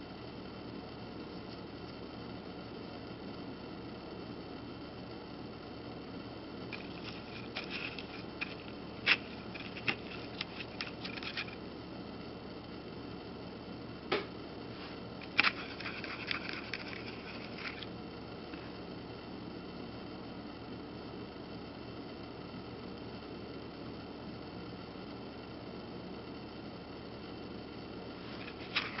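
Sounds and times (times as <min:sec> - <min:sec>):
steady hiss: 0:05.2 - 0:12.9.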